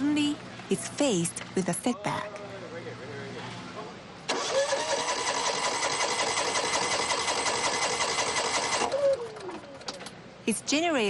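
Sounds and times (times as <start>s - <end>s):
generator engine clattering: 4.3s - 10.1s.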